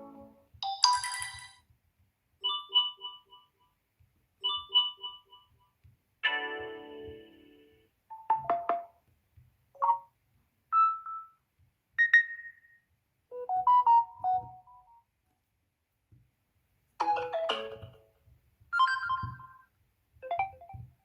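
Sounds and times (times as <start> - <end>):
melodic ringtone phrases: 0.0 - 1.5, 18.8 - 19.6
short ringtone chimes: 0.6 - 1.6, 18.8 - 19.7.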